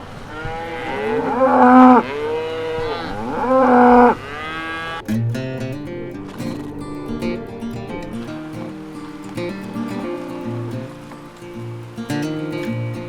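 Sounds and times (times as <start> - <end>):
acoustic guitar music: 0.0 - 13.0
cow mooing loudly: 0.3 - 5.0
faint cows lowing: 0.3 - 5.1.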